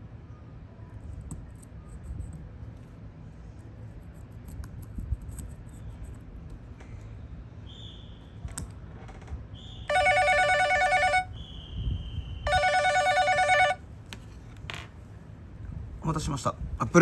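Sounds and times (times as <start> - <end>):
telephone electronic warbling ring: 9.9 - 11.3, 12.5 - 13.8.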